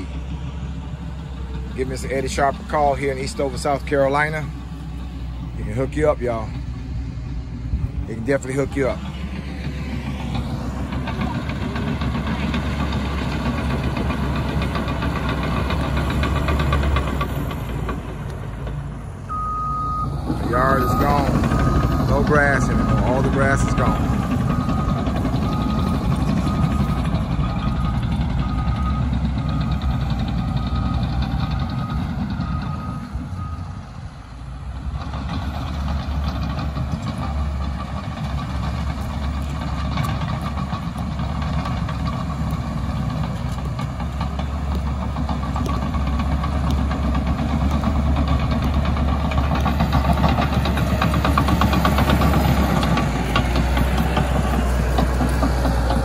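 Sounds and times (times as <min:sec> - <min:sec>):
bulldozer diesel engine under load: 0:00.0 - 0:56.0
backup alarm beeping: 0:19.3 - 0:31.2.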